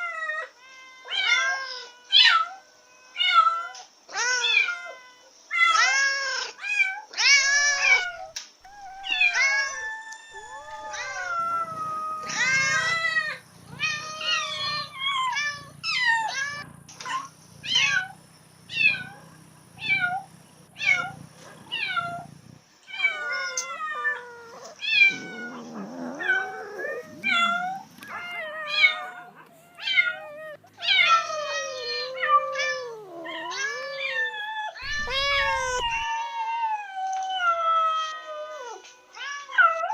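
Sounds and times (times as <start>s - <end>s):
cat meowing and yowling: 0.0s - 39.9s.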